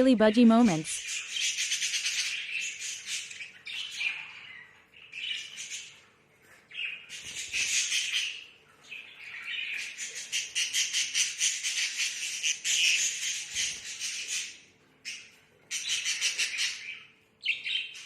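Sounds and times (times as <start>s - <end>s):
budgerigars chattering and warbling: 0.7s - 6.0s, 6.7s - 18.0s.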